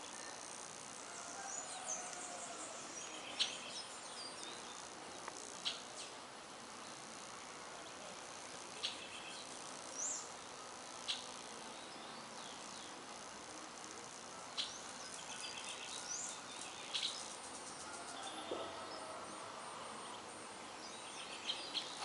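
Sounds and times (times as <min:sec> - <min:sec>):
bees buzzing: 0:00.0 - 0:01.6
high insect drone: 0:00.0 - 0:22.0.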